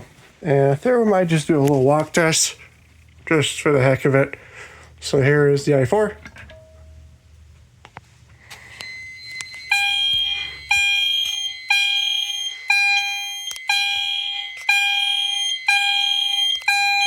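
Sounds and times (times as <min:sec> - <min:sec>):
faint steady tone: 0:08.4 - 0:17.0
fire alarm horns pulsing: 0:08.5 - 0:17.0.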